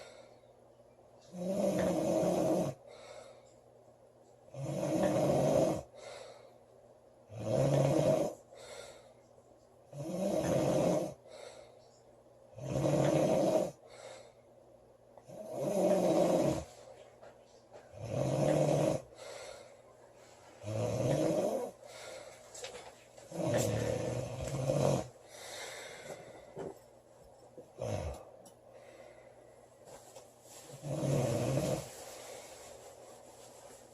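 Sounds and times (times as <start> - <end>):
quiet breathing: 0.0 - 33.9
woman snoring loudly: 1.3 - 2.8, 4.5 - 5.9, 7.3 - 8.4, 9.9 - 11.2, 12.6 - 13.8, 15.3 - 16.7, 18.0 - 19.1, 20.6 - 21.8, 23.3 - 25.1, 30.7 - 31.9.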